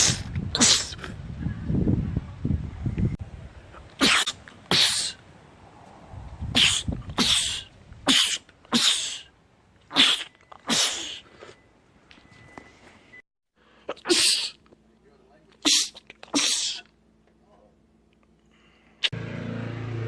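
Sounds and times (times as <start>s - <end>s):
man sneezing: 4.0s - 5.2s, 6.6s - 9.3s, 9.9s - 11.2s, 13.9s - 14.6s, 15.6s - 16.9s.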